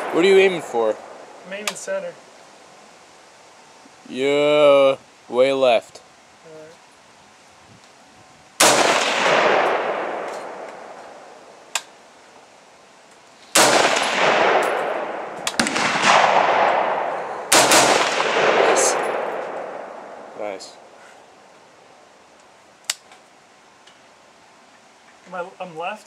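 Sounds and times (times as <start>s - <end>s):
rifle shots echoing: 0.0s - 1.5s, 8.6s - 11.6s, 13.6s - 20.9s.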